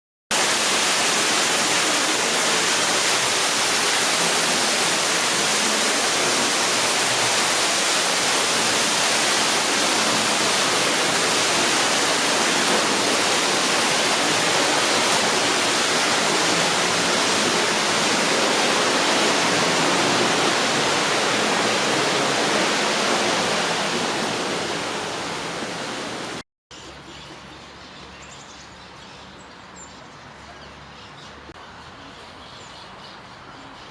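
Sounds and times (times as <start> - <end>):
steady rushing hiss: 0.3 - 26.4.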